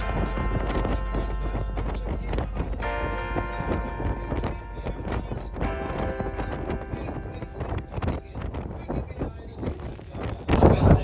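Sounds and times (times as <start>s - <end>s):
music with heavy bass beat: 0.0s - 8.4s
held synth chord: 0.0s - 8.7s.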